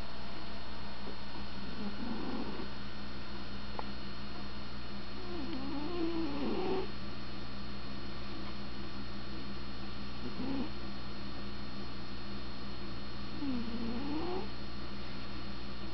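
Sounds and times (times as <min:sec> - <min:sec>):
electrical hum: 0:00.0 - 0:15.9
cat snoring: 0:01.7 - 0:02.7, 0:05.2 - 0:06.9, 0:10.2 - 0:10.8, 0:13.4 - 0:14.5.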